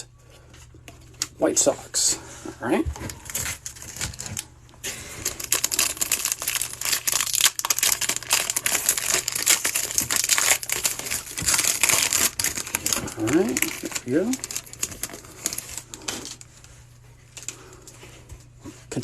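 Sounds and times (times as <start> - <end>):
foil wrapper tearing and crinkling: 3.1 - 16.4.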